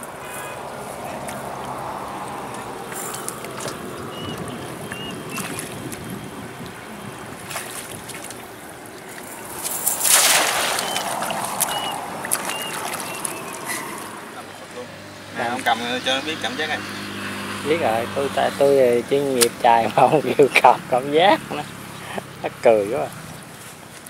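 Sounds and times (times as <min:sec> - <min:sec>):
shallow water splashing: 0:00.8 - 0:14.8.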